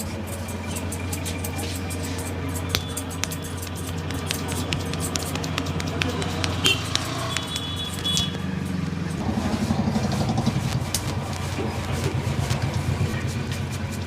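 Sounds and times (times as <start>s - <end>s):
vehicle engine running: 0.0s - 14.0s.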